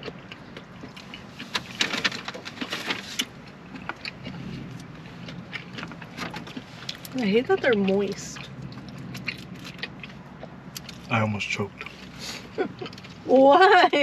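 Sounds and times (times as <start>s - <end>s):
steady low hum: 0.0s - 14.0s
food wrappers crinkling: 0.8s - 5.0s.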